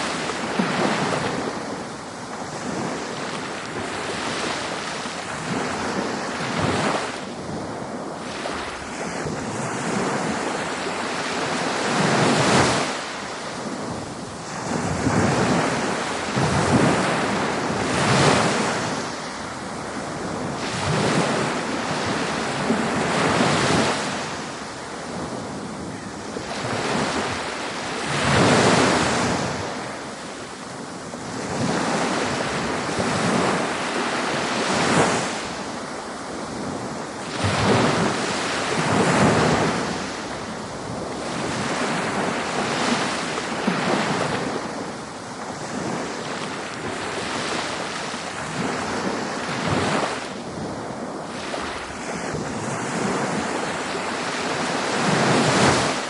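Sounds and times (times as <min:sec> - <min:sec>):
ocean waves breaking on beach: 0:00.0 - 0:56.0.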